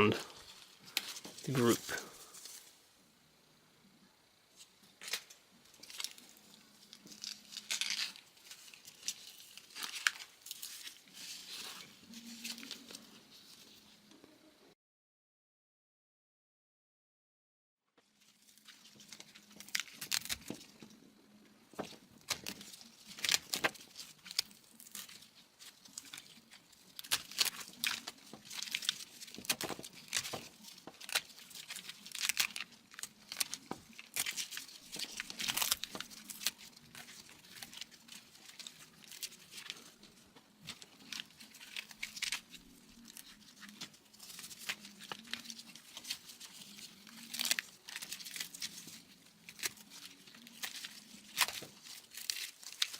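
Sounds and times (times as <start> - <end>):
plastic wire loom crinkling: 0.0 - 2.7, 4.6 - 13.9, 18.0 - 21.1, 21.7 - 52.9
faint steady hum: 0.0 - 14.7.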